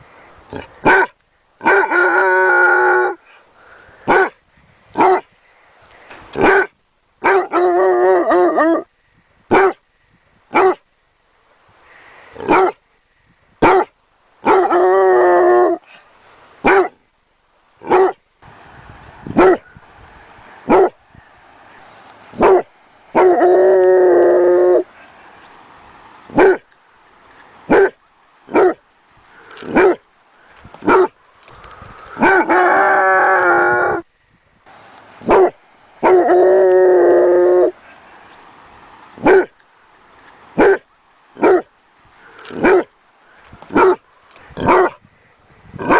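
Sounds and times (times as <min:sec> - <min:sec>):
puppy barking: 0:00.8 - 0:02.2, 0:04.1 - 0:04.4, 0:05.0 - 0:05.3, 0:06.4 - 0:08.8, 0:09.5 - 0:09.8, 0:10.5 - 0:10.8, 0:12.4 - 0:12.8, 0:13.6 - 0:14.8, 0:16.6 - 0:17.0, 0:17.8 - 0:18.2, 0:19.4 - 0:19.6, 0:20.7 - 0:21.0, 0:22.4 - 0:23.5, 0:26.3 - 0:26.6, 0:27.7 - 0:28.8, 0:29.6 - 0:30.0, 0:30.8 - 0:31.1, 0:35.2 - 0:36.4, 0:39.2 - 0:39.5, 0:40.6 - 0:40.8, 0:41.4 - 0:41.7, 0:42.5 - 0:42.9, 0:43.7 - 0:44.0, 0:44.6 - 0:45.0
puppy howling: 0:23.2 - 0:24.8, 0:35.3 - 0:37.8.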